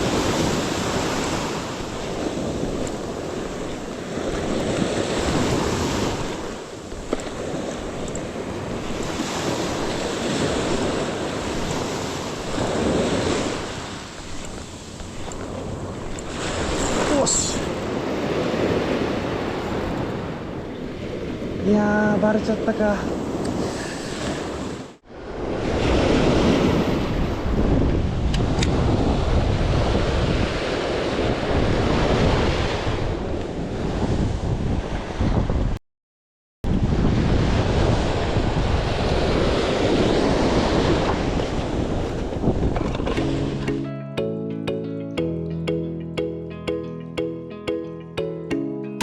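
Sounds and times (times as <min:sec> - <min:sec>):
surf washing onto beach: 0:00.0 - 0:22.3
wind buffeting microphone: 0:00.0 - 0:22.4, 0:23.1 - 0:35.8, 0:36.7 - 0:43.2.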